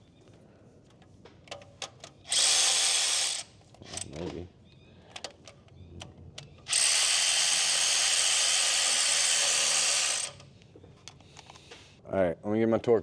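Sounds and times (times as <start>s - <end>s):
cordless power tool running: 2.3s - 4.1s, 6.7s - 10.5s.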